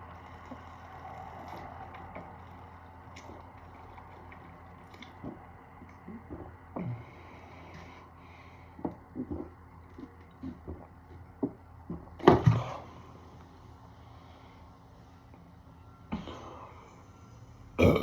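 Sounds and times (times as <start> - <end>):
person gulping a drink: 17.8 - 18.0.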